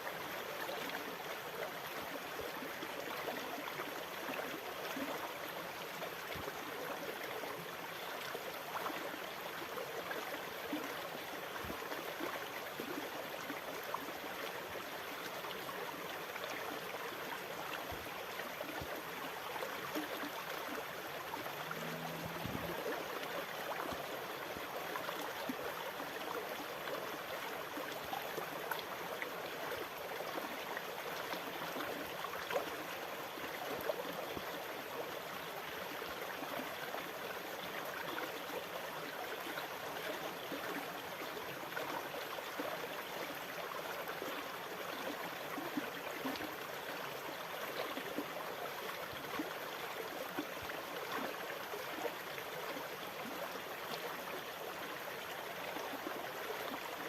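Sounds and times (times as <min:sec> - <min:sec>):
low hum: 0:21.6 - 0:22.9.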